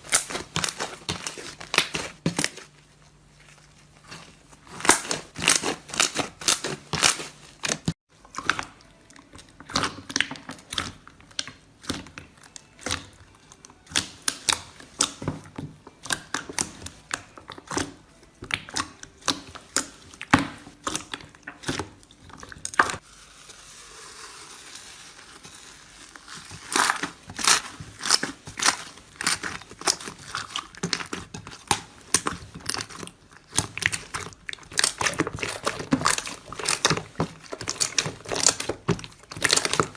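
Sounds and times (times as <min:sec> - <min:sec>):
slime squishing: 0:00.0 - 0:39.9.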